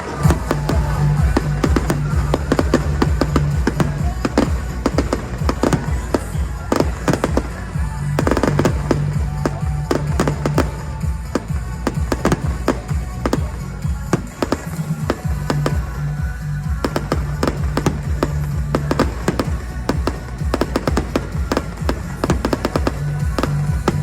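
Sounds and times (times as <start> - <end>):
fireworks bangs and crackles: 0.0 - 24.0
loud music with heavy bass: 0.0 - 24.0.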